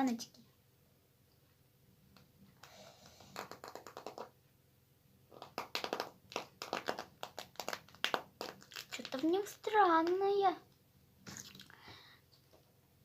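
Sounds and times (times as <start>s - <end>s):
plastic jars clicking and crackling: 5.3s - 10.4s.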